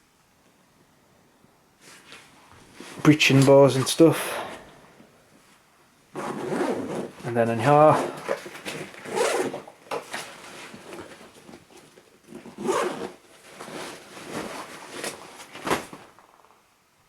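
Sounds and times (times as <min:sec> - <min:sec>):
fabric gear rustling: 0:05.6 - 0:16.6
zipper being pulled open: 0:06.1 - 0:07.2, 0:07.8 - 0:09.7, 0:12.3 - 0:15.2.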